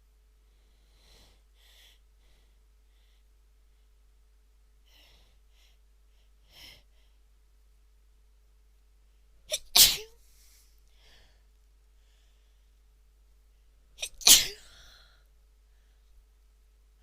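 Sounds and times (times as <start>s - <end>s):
woman sneezing: 9.5s - 10.2s, 14.0s - 14.7s.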